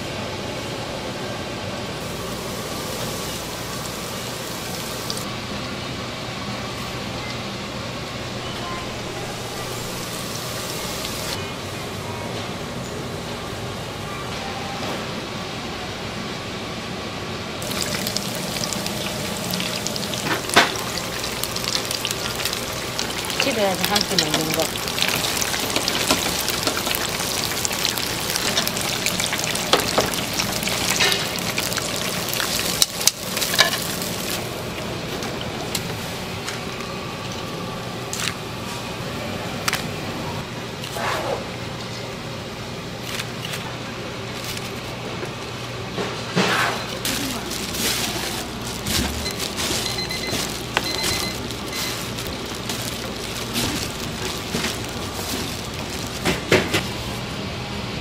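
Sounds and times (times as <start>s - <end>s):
food sizzling in a pan: 2.0s - 5.3s, 17.6s - 34.4s, 49.3s - 56.3s.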